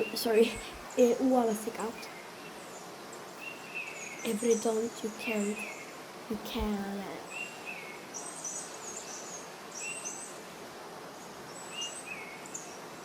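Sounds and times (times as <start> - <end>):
bird chirping: 0.0 - 10.4
steady background hiss: 0.0 - 13.0.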